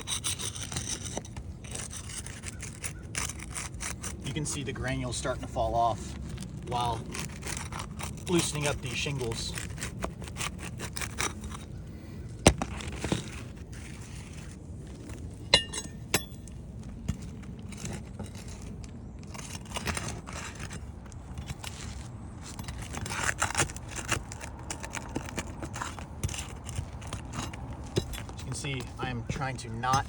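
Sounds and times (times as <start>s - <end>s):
gritty scraping: 0.0s - 30.0s
metal tool knocking on shingles: 15.5s - 16.4s, 27.4s - 30.0s
ringing metal clink: 15.5s - 16.5s.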